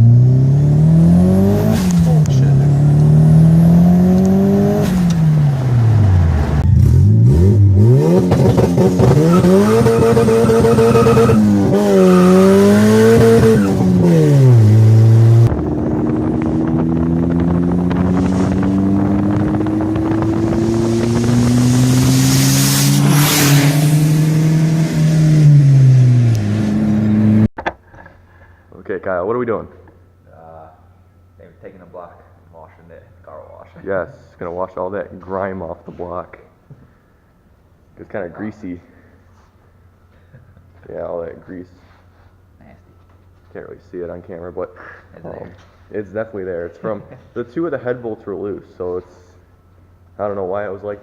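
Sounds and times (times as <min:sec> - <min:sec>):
car engine revving: 0:00.0 - 0:27.5.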